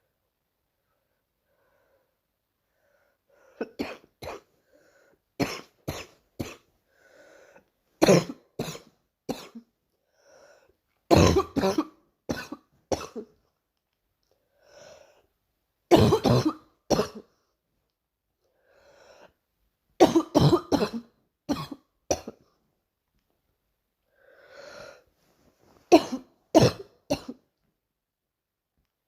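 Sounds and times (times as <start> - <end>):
girl coughing: 3.6 - 4.5, 5.4 - 6.7, 8.0 - 9.7, 11.1 - 13.3, 15.9 - 17.3, 20.0 - 22.4, 25.9 - 27.4
girl breathing in: 6.9 - 7.6, 10.1 - 10.8, 14.5 - 15.3, 18.6 - 19.4, 24.1 - 25.1.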